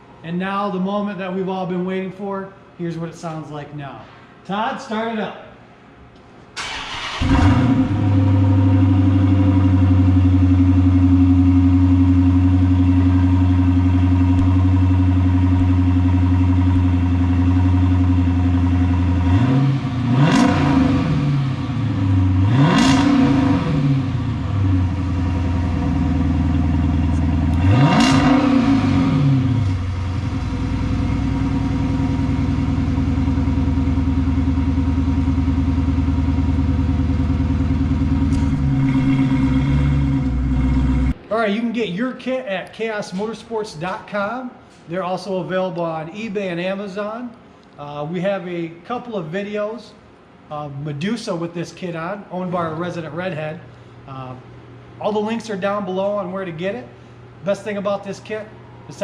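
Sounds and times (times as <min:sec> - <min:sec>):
car engine starting and idling: 0:06.6 - 0:41.2
engine revving: 0:06.6 - 0:41.2.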